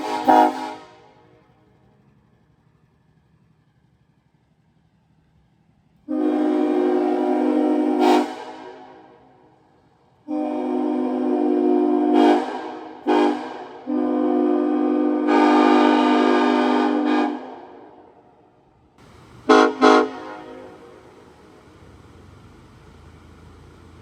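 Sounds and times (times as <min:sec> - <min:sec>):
train horn blasts: 0:00.0 - 0:01.6, 0:06.1 - 0:09.6, 0:10.2 - 0:18.3, 0:19.0 - 0:21.4.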